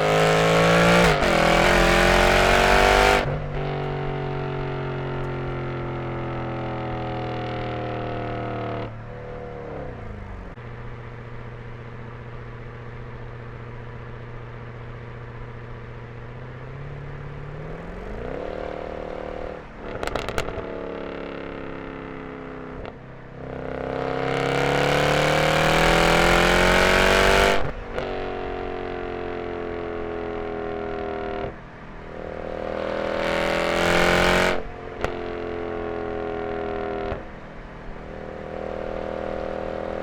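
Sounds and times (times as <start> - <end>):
car engine revving: 0.0 - 10.6, 16.1 - 23.0, 23.7 - 40.0
exhaust crackles: 13.7 - 22.2.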